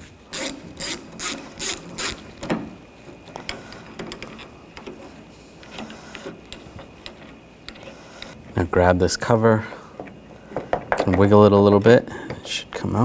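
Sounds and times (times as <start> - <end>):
hand ratchet rasping: 0.0 - 2.6, 3.2 - 8.4.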